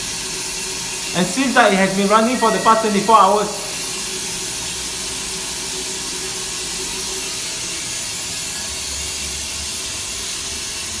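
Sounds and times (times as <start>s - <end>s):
water running: 0.8s - 5.0s.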